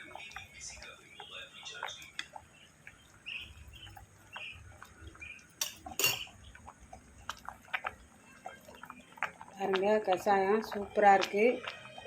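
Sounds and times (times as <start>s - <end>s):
metal utensils and pots clinking: 5.6s - 6.4s.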